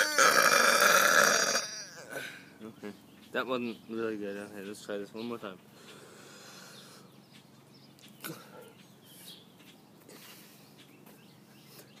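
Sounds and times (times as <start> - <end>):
breathy hiss: 5.8 - 7.1.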